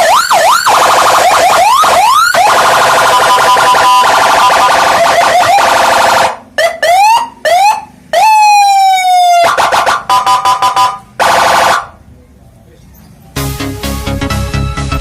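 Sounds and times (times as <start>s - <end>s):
electronic siren tones: 0.0s - 12.0s.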